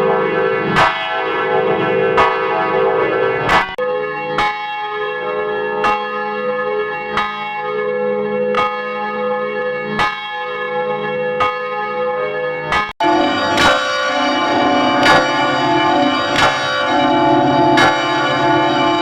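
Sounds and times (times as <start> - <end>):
church bell tolling: 0.0 - 6.8, 11.8 - 19.0
bell ringing: 13.0 - 19.0.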